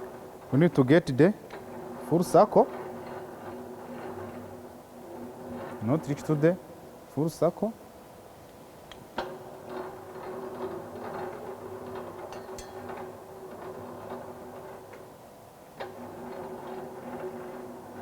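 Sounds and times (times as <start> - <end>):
gears and rollers clicking: 0.0 - 7.7, 8.9 - 18.0.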